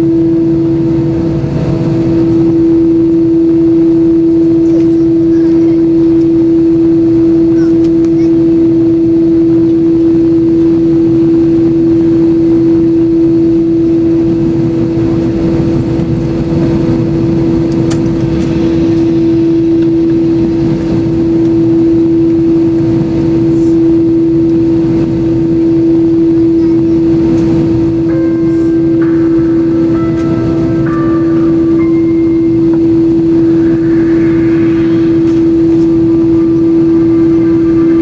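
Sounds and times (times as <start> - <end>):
airplane cabin engine drone: 0.0 - 38.0.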